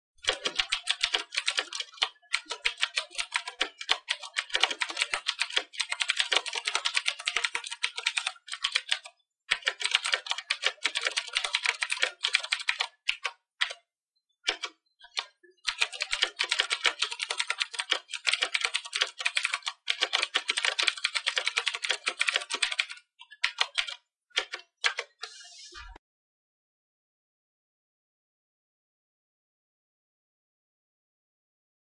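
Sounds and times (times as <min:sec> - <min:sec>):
mechanical keyboard typing: 0:00.2 - 0:13.8, 0:14.5 - 0:25.4.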